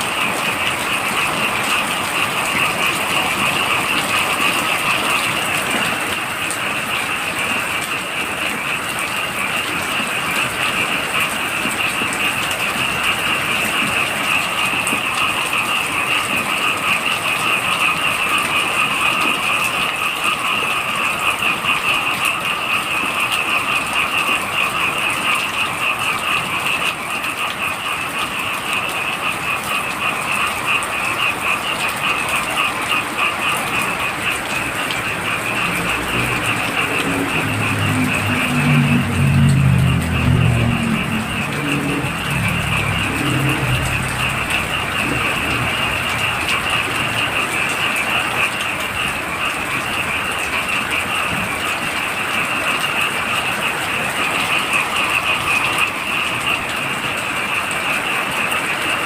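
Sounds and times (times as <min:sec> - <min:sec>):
frogs trilling: 0:00.0 - 0:59.0
heavy rain falling: 0:00.0 - 0:59.0
low vehicle engine: 0:33.8 - 0:49.9.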